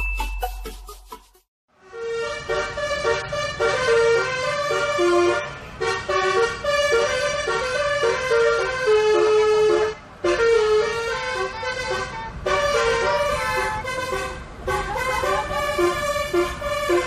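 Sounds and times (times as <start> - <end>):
multi-tone bus horns playing tune: 1.7 - 17.0.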